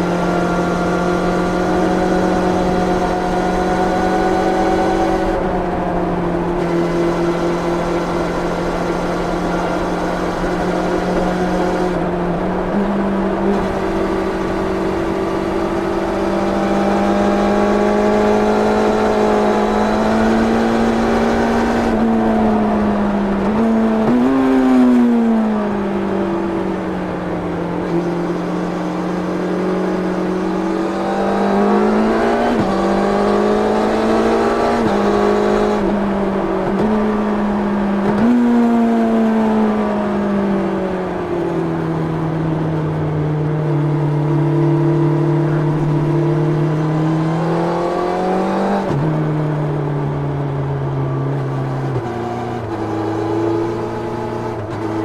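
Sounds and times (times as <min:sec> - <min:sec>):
motorcycle engine revving: 0:00.0 - 0:40.3.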